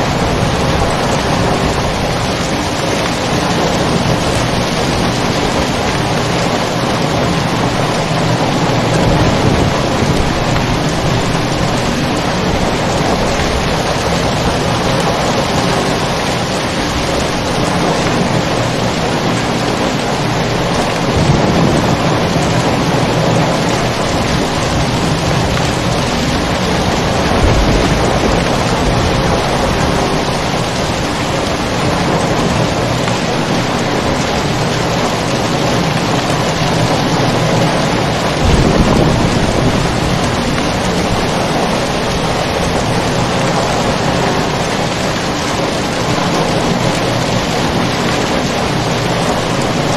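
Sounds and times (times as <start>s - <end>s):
heavy rain: 0.0s - 49.9s
low rolls of thunder: 3.3s - 16.0s, 20.7s - 32.6s, 38.1s - 44.1s.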